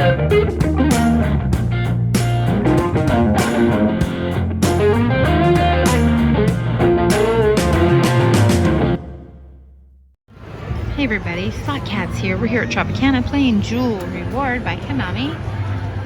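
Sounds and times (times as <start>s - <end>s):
upbeat rock music: 0.0s - 9.2s.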